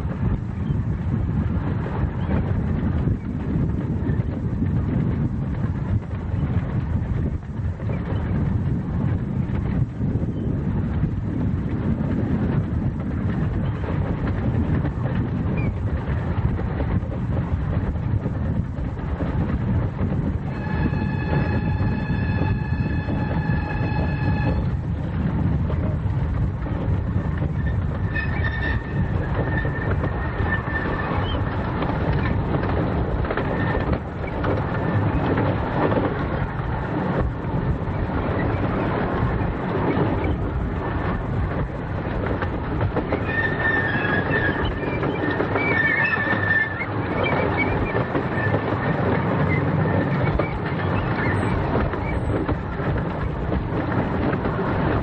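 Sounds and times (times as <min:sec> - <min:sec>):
miniature train wheels rumbling: 0:00.0 - 0:55.0
high wheel squeal: 0:20.5 - 0:24.7, 0:27.5 - 0:32.3, 0:43.1 - 0:52.5.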